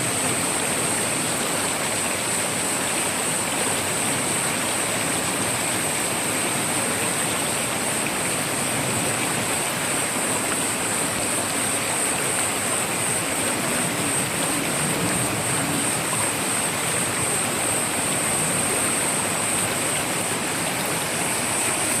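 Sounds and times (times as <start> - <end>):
stream rushing: 0.0 - 22.0.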